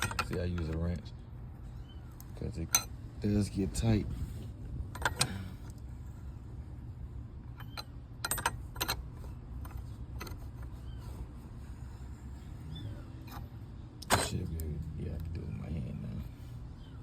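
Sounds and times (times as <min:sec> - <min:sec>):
wrench clicking and clanking: 0:07.6 - 0:09.1.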